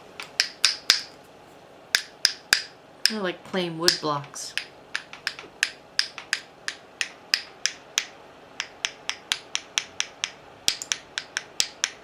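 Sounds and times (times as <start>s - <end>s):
sharp even clicks: 3.9s - 12.0s.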